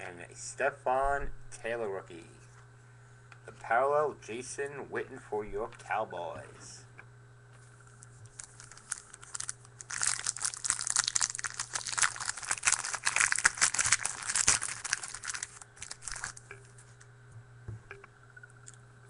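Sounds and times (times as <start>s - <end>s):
foil wrapper crinkling: 8.2s - 16.5s.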